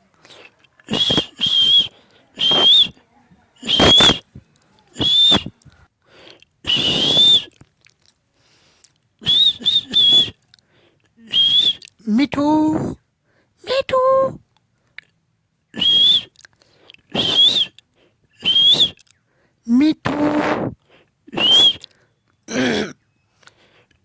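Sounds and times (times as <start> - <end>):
parrot whistling: 0.9 - 3.0.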